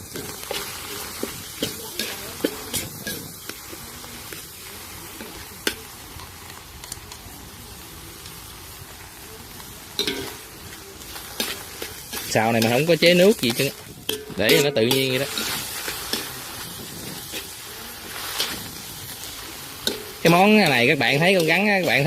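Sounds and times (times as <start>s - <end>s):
metal spatula scraping a pan: 0.0s - 3.5s, 11.1s - 22.0s
meat sizzling in a pan: 0.0s - 22.0s.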